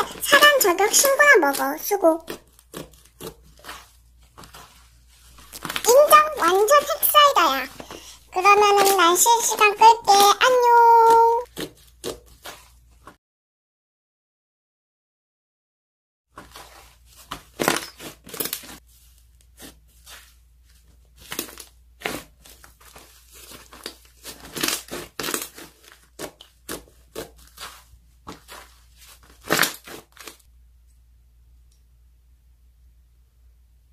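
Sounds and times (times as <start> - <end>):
slime crackling and snapping: 23.4 - 28.6.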